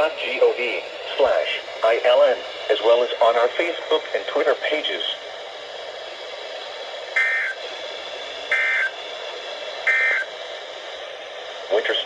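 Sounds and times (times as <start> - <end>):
radio hiss: 0.0 - 12.0
two-tone digital data bursts: 7.2 - 7.6, 8.5 - 8.9, 9.9 - 10.3.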